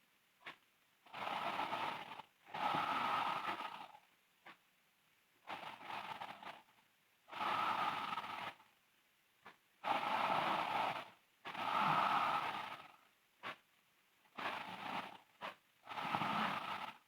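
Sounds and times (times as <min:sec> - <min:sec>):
girl snoring loudly: 0:07.3 - 0:08.6, 0:09.9 - 0:13.0, 0:15.9 - 0:17.0.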